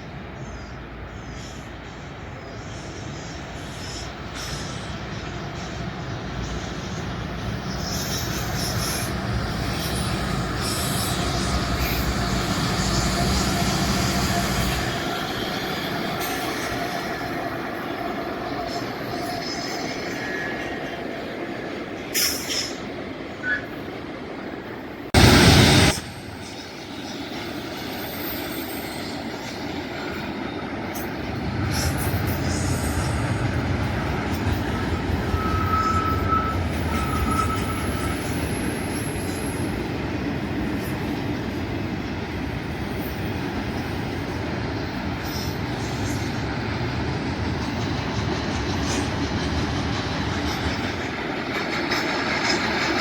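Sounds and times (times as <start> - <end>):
diesel locomotive engines rumbling: 0.0 - 53.0
freight train rumbling past: 0.0 - 53.0
wheel squeals: 34.8 - 39.6.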